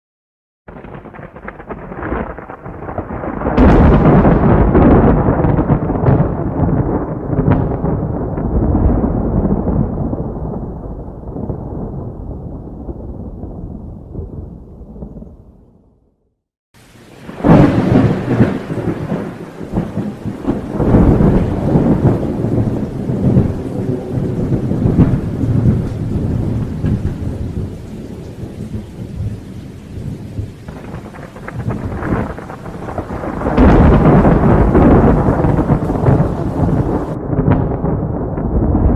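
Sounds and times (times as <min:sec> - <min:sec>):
steady rain: 0:00.7 - 0:15.2, 0:16.8 - 0:38.9
thunder rumbling and cracking: 0:00.7 - 0:16.0, 0:16.8 - 0:38.9.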